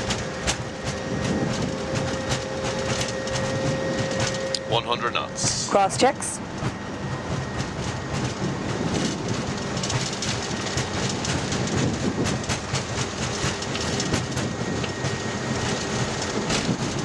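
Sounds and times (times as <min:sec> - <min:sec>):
airframe and wheels rumbling: 0:00.0 - 0:17.0
jet engines at take-off thrust: 0:00.0 - 0:17.0
landing gear knocking on runway: 0:06.6 - 0:17.0.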